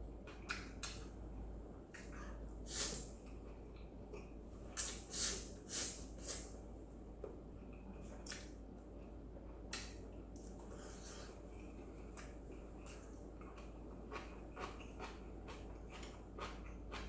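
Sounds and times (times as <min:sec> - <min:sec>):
person slurping and chewing noodles: 0:10.7 - 0:17.0.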